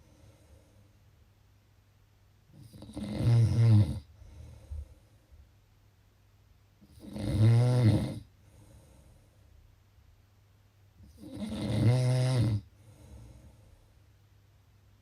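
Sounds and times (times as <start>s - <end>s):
soft breath: 0.0s - 1.1s, 4.0s - 5.6s, 8.3s - 9.7s, 12.7s - 14.1s
person snoring: 2.6s - 4.6s, 6.9s - 8.3s, 11.1s - 13.5s.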